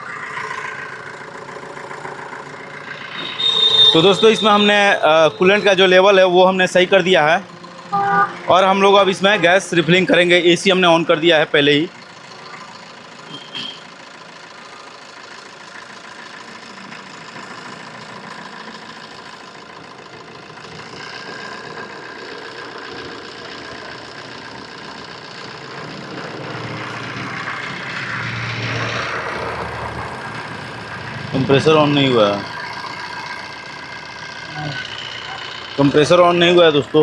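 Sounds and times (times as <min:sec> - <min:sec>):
car engine idling: 0:00.0 - 0:37.0.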